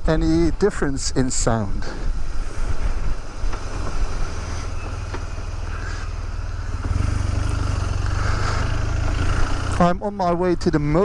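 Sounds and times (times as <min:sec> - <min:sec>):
wind noise on microphone: 0:00.0 - 0:07.4
motorcycle engine running: 0:02.8 - 0:10.0.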